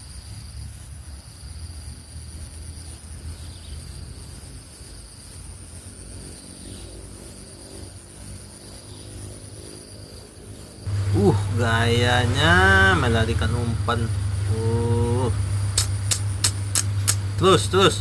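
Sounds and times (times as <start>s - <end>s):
insects trilling: 0.0s - 18.0s
lower insect trill: 0.0s - 18.0s
low rumble: 10.9s - 18.0s.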